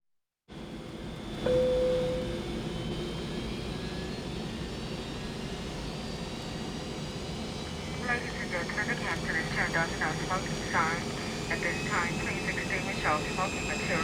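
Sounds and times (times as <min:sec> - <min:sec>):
airliner cabin drone: 0:00.5 - 0:14.0
cabin chime: 0:01.5 - 0:02.5.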